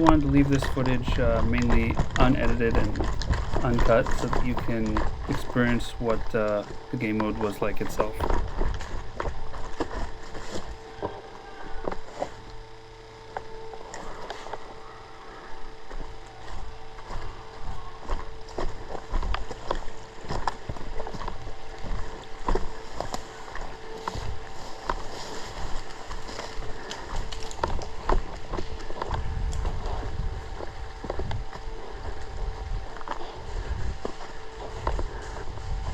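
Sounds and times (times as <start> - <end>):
faint steady hum: 0.0 - 35.9.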